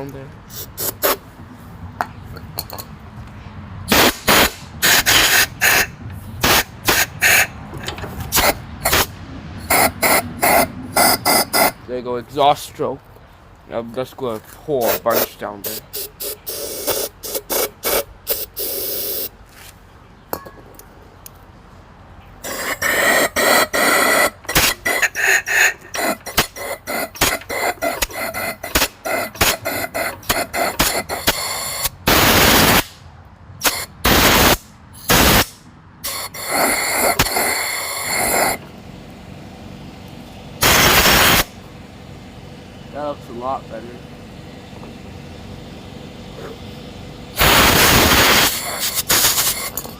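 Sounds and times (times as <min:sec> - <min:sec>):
aerosol spray hissing: 0:47.4 - 0:49.7.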